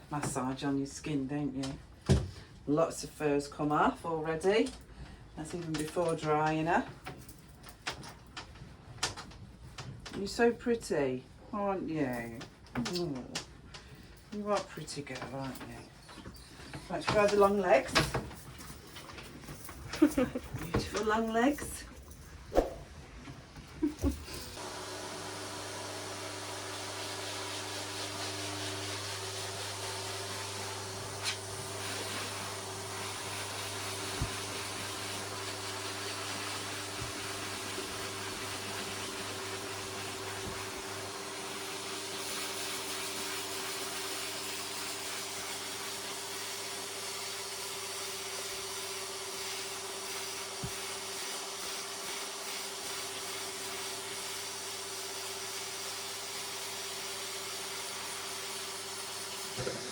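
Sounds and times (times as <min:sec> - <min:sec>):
dryer motor hum: 0:23.2 - 0:51.6, 0:57.0 - 0:59.9.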